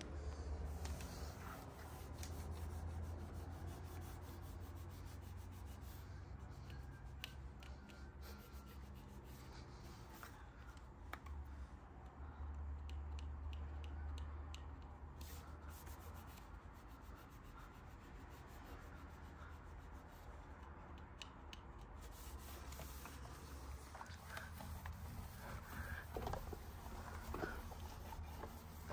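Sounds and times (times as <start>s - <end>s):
faint scrubbing: 22.1s - 28.9s.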